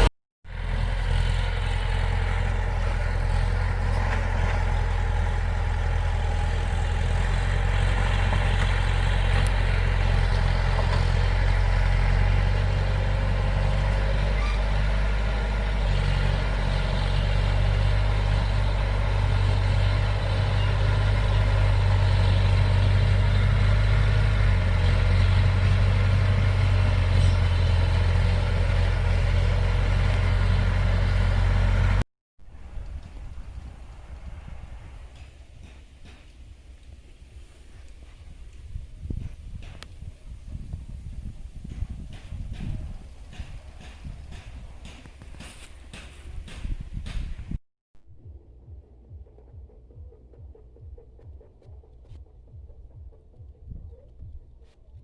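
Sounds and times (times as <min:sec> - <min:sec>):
heavy diesel engine running: 0:00.0 - 0:32.0.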